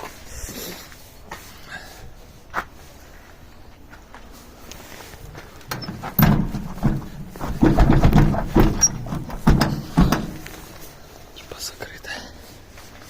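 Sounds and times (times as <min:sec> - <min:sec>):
heavy irregular thuds and knocks: 0:05.7 - 0:10.8.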